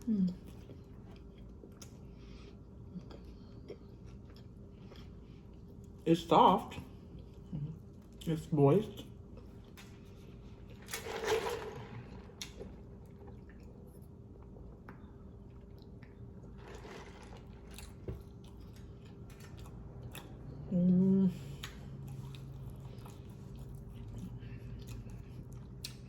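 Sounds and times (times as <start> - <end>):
faint steady hum: 0.0 - 26.0
person chewing: 0.3 - 6.0, 15.5 - 20.6, 21.5 - 26.0.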